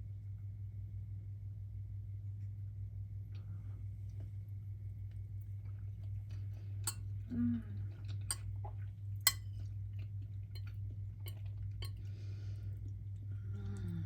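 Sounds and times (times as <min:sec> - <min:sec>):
fork clicking against plate: 0:09.3 - 0:09.5.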